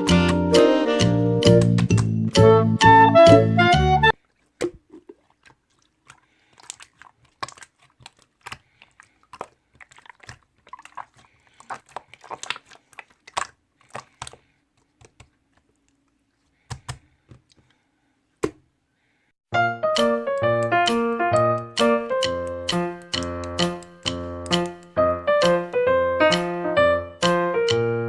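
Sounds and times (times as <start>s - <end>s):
slime squished by hand: 4.5s - 17.6s.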